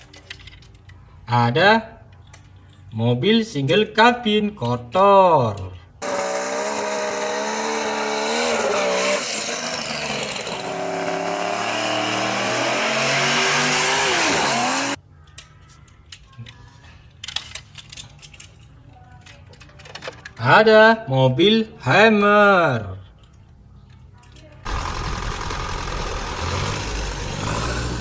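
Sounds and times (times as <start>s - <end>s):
plastic toys clicking: 0.0s - 1.3s, 2.0s - 3.0s, 15.1s - 20.6s, 23.0s - 24.8s
car engine revving: 6.0s - 15.0s, 24.7s - 28.0s.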